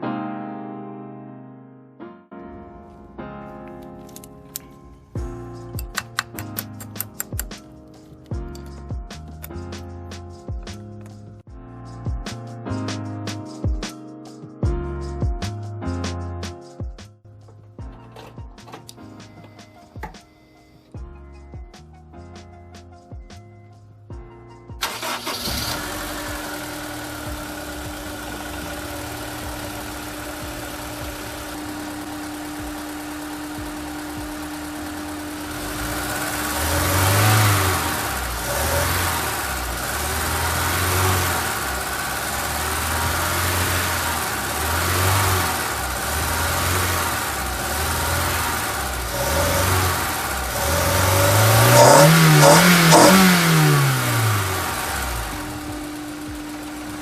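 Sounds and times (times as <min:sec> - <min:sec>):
car engine idling: 0:24.8 - 0:57.0
engine revving: 0:24.8 - 0:57.0.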